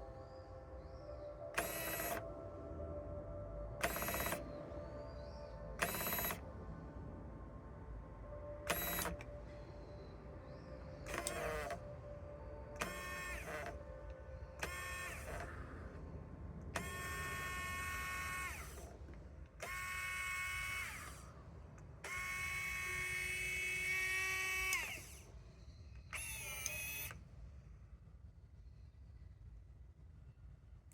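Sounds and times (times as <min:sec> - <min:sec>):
electric actuator motor whining: 0:00.8 - 0:02.6, 0:03.8 - 0:06.5, 0:08.6 - 0:25.4, 0:26.0 - 0:27.2.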